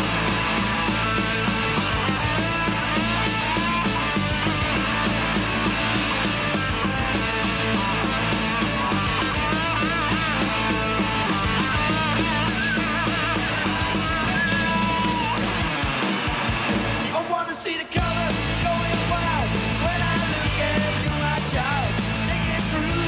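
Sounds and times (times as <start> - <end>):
organ melody: 0.0 - 17.1
guitar melody: 0.0 - 17.2
rock band playing: 0.0 - 23.0.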